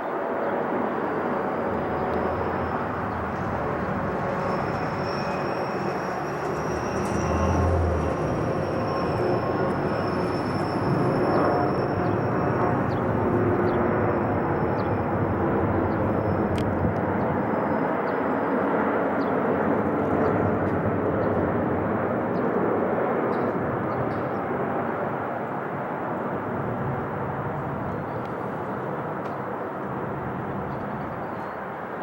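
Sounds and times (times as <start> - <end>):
faint high jet whine: 0.0 - 31.9
jet engine rushing: 0.2 - 18.5.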